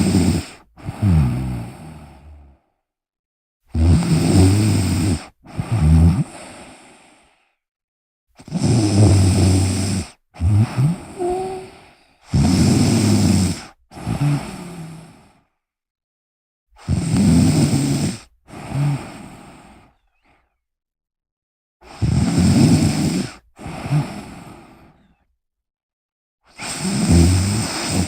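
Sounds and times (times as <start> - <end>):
person snoring: 0.0 - 2.5, 3.7 - 7.2, 8.4 - 15.3, 16.8 - 20.0, 26.5 - 28.0.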